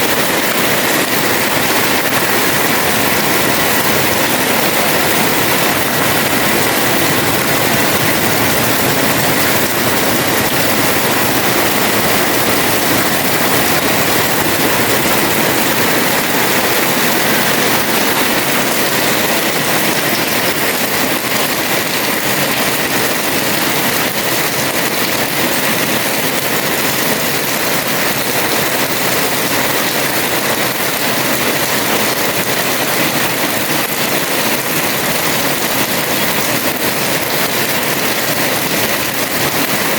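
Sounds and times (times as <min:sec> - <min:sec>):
heavy rain on a terrace: 0:00.0 - 0:39.9.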